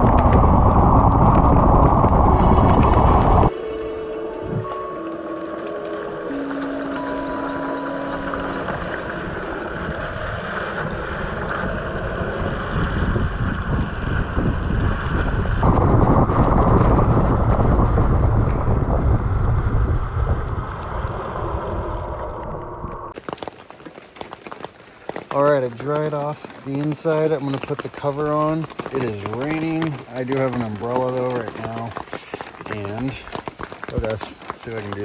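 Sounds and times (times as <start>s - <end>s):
wind buffeting microphone: 0.0s - 23.2s
tyre and wind noise: 0.0s - 35.0s.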